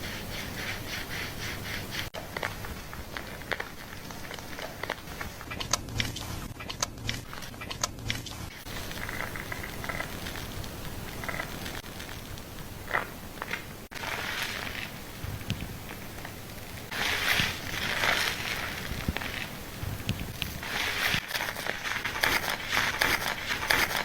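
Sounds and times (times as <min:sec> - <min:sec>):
hiss: 0:00.0 - 0:02.9, 0:08.5 - 0:24.0
fingers scrubbing lathered hair: 0:00.0 - 0:24.0.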